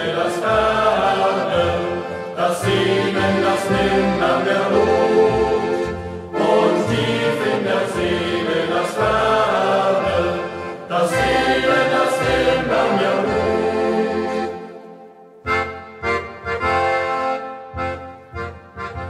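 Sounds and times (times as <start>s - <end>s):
youth choir singing: 0.0s - 14.9s.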